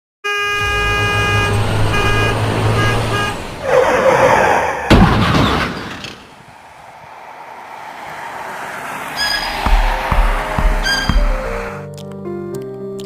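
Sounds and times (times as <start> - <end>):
horn blaring: 0.2 - 4.5, 9.0 - 11.8
loud crash with low boom: 4.9 - 6.4
rush of noise: 6.0 - 11.8
low engine rumble: 6.6 - 11.8.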